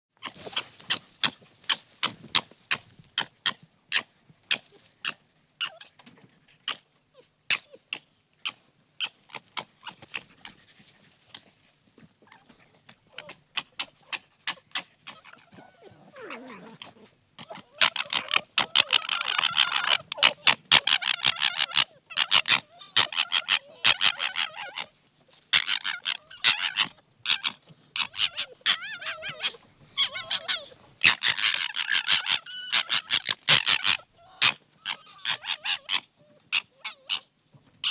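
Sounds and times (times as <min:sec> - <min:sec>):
young foxes calling: 0:12.4 - 0:24.9, 0:25.5 - 0:37.9.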